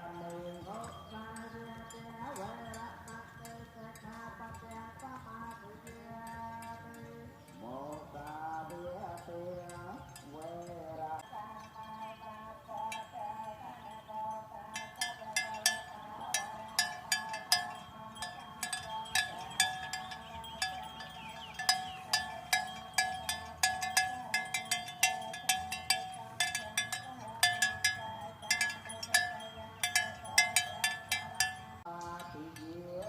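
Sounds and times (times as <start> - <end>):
cattle bells clanking: 0.0 - 33.0.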